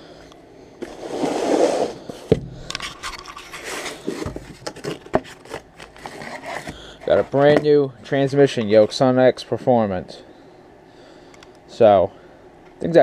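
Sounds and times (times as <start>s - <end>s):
packaging scraping and rustling: 2.8s - 7.6s.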